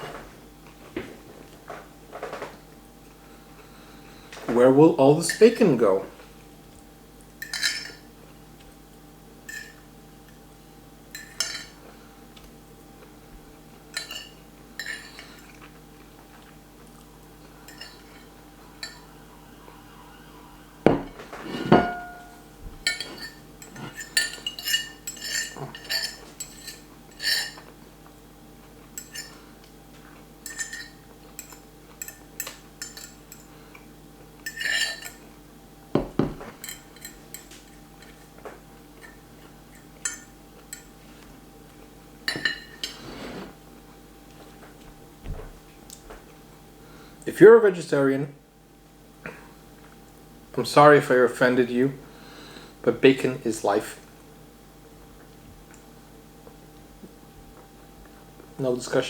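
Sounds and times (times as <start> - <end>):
fork scraping on a plate: 17.7 - 27.7.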